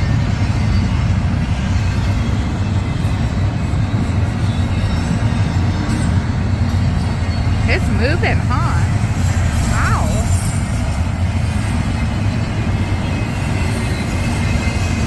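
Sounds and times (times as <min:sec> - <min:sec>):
freight train wheels rumbling on rail: 0:00.0 - 0:15.0.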